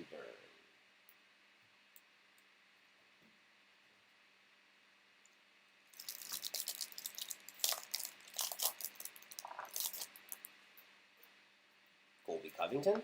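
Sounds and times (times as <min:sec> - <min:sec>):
foil wrapper crinkling: 0:05.9 - 0:10.5.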